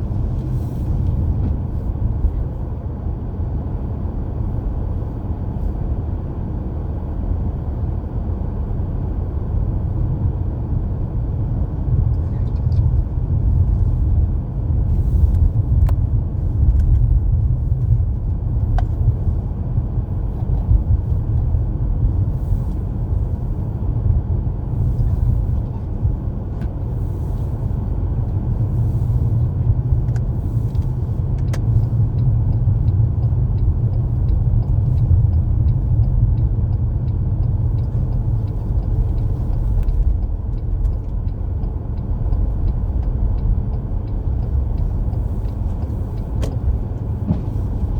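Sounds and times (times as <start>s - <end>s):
car driving on snowy road: 0.0s - 47.9s
faint regular ticking: 31.1s - 47.2s.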